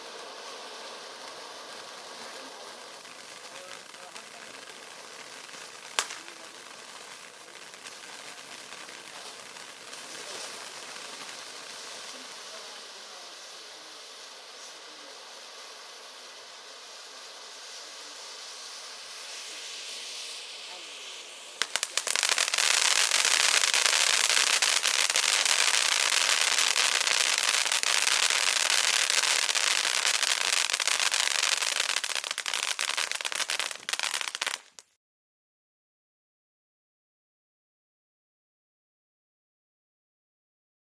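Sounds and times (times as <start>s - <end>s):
firework fountain hissing: 0.0s - 34.9s
faint crackle: 0.0s - 35.0s
sharp crack: 2.1s - 12.7s, 19.4s - 34.9s.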